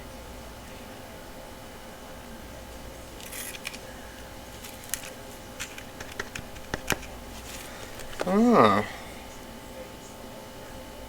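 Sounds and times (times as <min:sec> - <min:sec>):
steady faint hum: 0:00.0 - 0:11.0
packaging rustles: 0:03.2 - 0:08.5.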